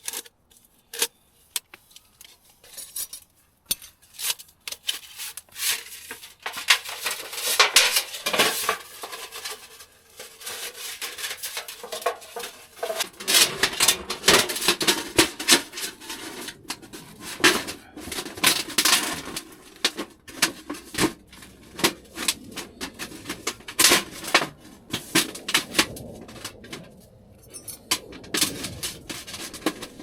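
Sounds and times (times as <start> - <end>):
metal cookware clinking and scraping: 5.7 - 25.1.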